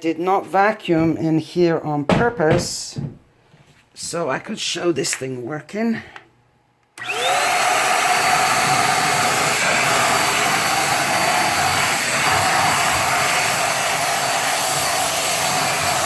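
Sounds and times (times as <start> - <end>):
handheld vacuum cleaner running: 7.0 - 16.0.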